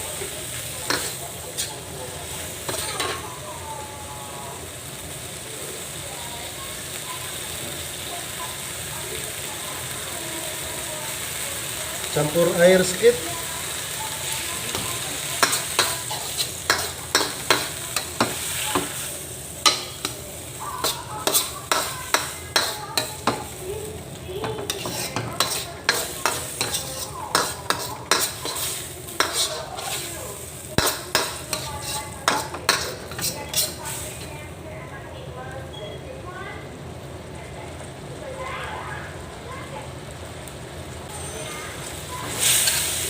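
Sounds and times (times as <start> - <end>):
food sizzling in a pan: 0.0 - 43.0
spatula scraping a pan: 0.8 - 3.2, 14.3 - 23.6, 24.4 - 34.3.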